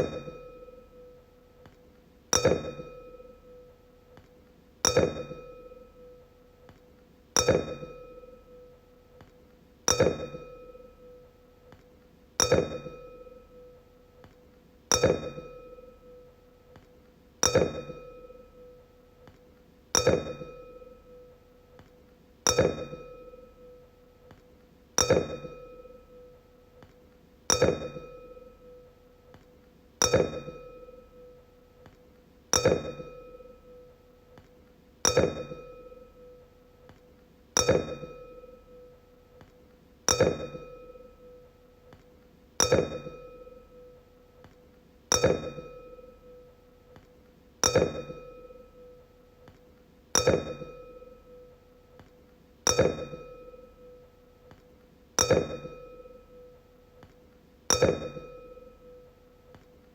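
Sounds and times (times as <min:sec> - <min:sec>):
wine glass ringing when struck: 0:00.0 - 0:00.9, 0:02.4 - 0:03.6, 0:04.8 - 0:06.2, 0:07.4 - 0:08.7, 0:09.9 - 0:11.1, 0:12.4 - 0:13.5, 0:14.9 - 0:16.2, 0:17.4 - 0:18.8, 0:20.0 - 0:21.3, 0:22.5 - 0:23.8, 0:25.0 - 0:26.3, 0:27.5 - 0:28.8, 0:30.0 - 0:31.4, 0:32.5 - 0:33.9, 0:35.1 - 0:36.4, 0:37.6 - 0:39.0, 0:40.1 - 0:41.4, 0:42.6 - 0:44.0, 0:45.1 - 0:46.5, 0:47.6 - 0:49.0, 0:50.2 - 0:51.5, 0:52.7 - 0:54.0, 0:55.2 - 0:56.5, 0:57.7 - 0:59.1.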